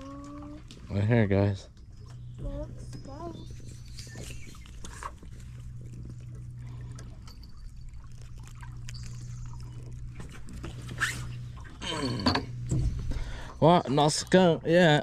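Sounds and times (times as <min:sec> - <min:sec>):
steady low hum: 0:00.0 - 0:15.0
water trickling and pouring: 0:03.2 - 0:11.8, 0:13.3 - 0:15.0.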